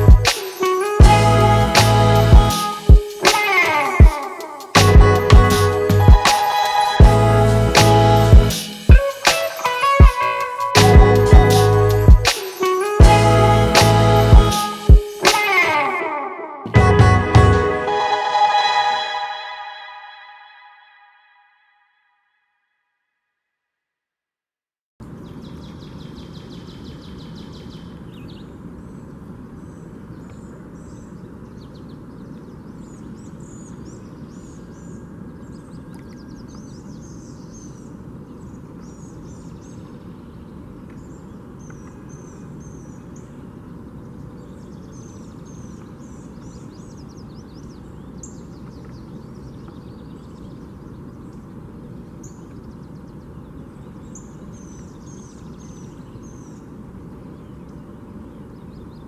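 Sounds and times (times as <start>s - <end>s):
small birds chirping: 25.2s - 59.0s.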